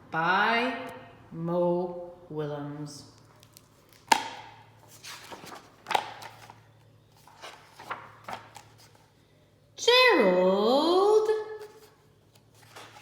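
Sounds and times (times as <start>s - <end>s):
book handling knocks and clicks: 3.4s - 6.6s.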